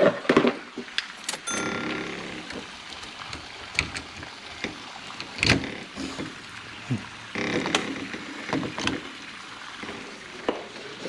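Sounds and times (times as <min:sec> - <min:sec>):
door lock clicks and knocks: 0:01.2 - 0:01.9.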